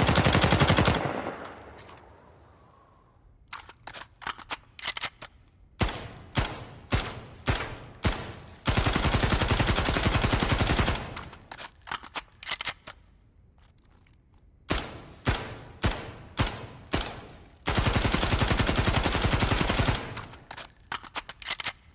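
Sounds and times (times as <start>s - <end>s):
full-auto rifle burst: 0.0s - 1.8s
rifle single shots: 0.2s - 2.3s.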